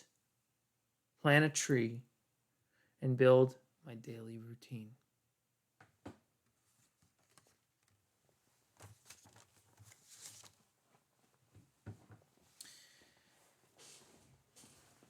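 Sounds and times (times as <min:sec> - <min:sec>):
faint rustling: 0:08.2 - 0:15.0.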